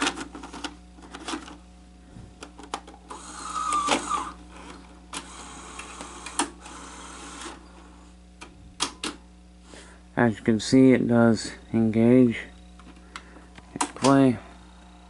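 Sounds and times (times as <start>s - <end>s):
vcr motor whirring and clattering: 0.0s - 9.2s, 12.6s - 15.0s
sharp mechanical clicks: 5.2s - 7.6s.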